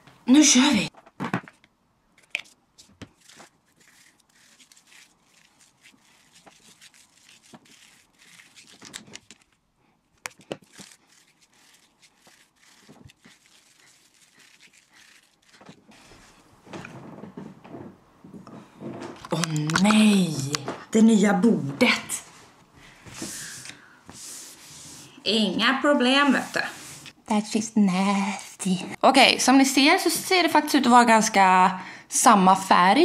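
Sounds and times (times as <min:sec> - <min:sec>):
hands squishing wet hair: 0:03.1 - 0:09.6, 0:10.2 - 0:16.5.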